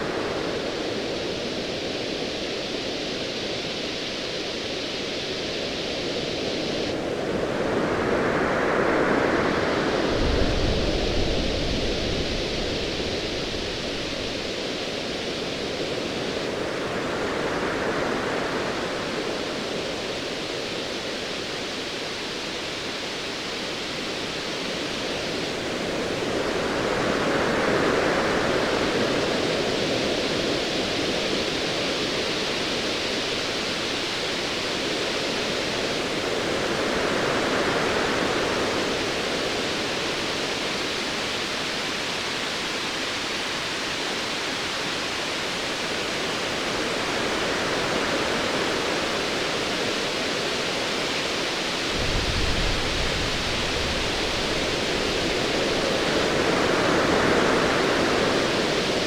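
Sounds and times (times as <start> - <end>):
distant thunder rumble: 52.0 - 55.4.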